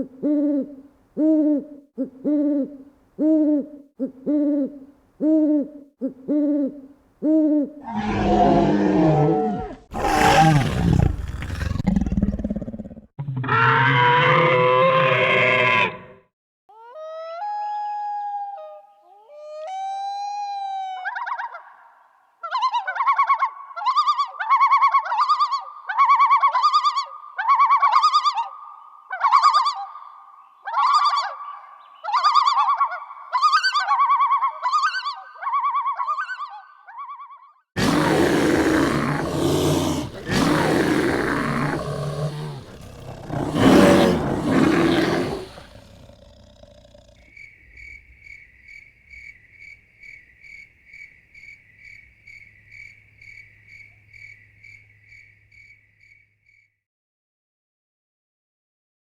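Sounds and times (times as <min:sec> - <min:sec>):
pitched animal call: 0:05.4 - 0:21.8, 0:32.0 - 0:47.3
loud rough animal roar: 0:07.8 - 0:16.2, 0:37.8 - 0:47.3
crickets chirping: 0:37.9 - 0:56.7.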